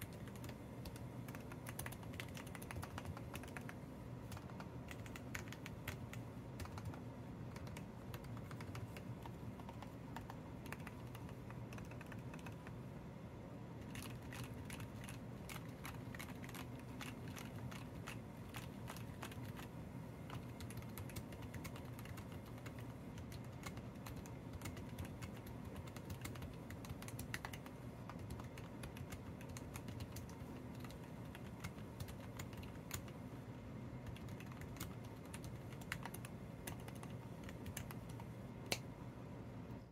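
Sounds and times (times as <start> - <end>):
mechanical keyboard typing: 0.0 - 12.8, 13.8 - 33.2, 34.0 - 38.8.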